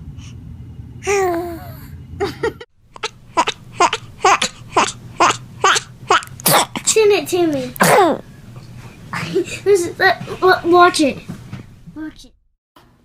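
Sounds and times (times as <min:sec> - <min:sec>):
baby vocalizing: 0:02.9 - 0:07.0.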